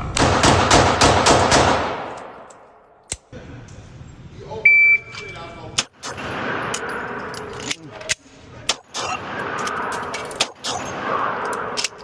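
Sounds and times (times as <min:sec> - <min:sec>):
pistol shots: 0:00.1 - 0:03.1.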